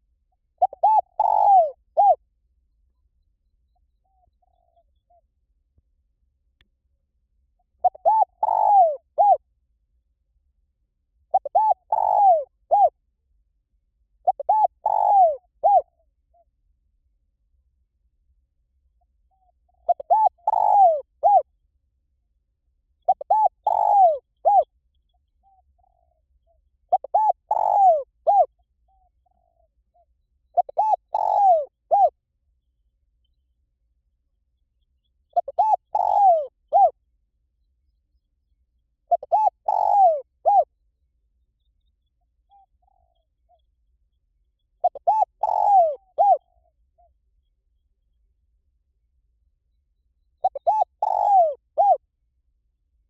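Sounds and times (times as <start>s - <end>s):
dove cooing: 0.6s - 2.2s, 7.8s - 9.4s, 11.3s - 13.0s, 14.2s - 15.9s, 19.8s - 21.5s, 23.1s - 24.7s, 26.9s - 32.2s, 35.4s - 37.0s, 39.1s - 40.7s, 44.8s - 46.7s, 50.4s - 52.0s.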